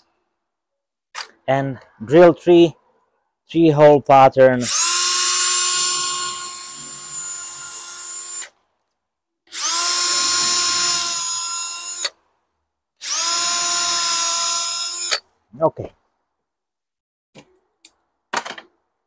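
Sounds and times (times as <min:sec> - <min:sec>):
electric drill boring into wood: 0:04.6 - 0:08.6, 0:09.5 - 0:12.2, 0:13.0 - 0:15.2.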